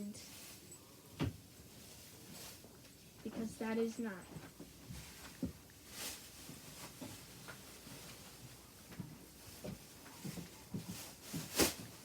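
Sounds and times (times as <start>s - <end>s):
faint light taps and handling: 2.3s - 11.8s.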